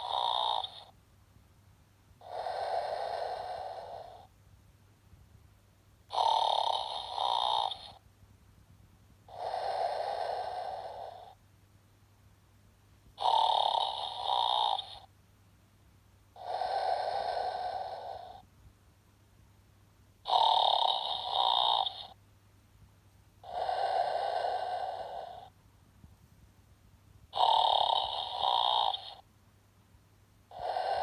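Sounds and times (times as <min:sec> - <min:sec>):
toy snoring: 0:00.0 - 0:00.9, 0:02.2 - 0:04.3, 0:06.0 - 0:08.0, 0:09.3 - 0:11.4, 0:13.2 - 0:15.1, 0:16.4 - 0:18.5, 0:20.2 - 0:22.2, 0:23.4 - 0:25.6, 0:27.3 - 0:29.3, 0:30.5 - 0:31.0.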